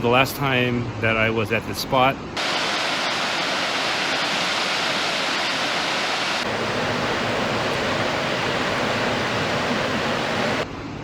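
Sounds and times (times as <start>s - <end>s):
rush of falling water: 2.4s - 10.6s.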